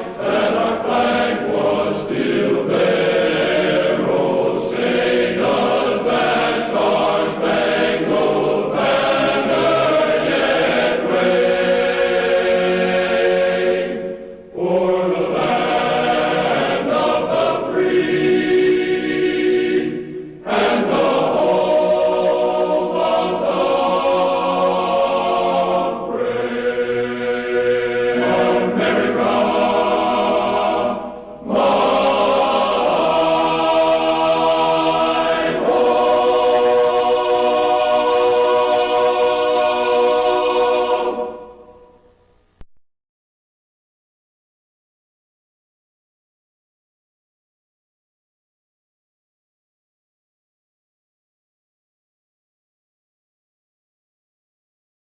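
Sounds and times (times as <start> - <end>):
choir singing: 0.0 - 42.0.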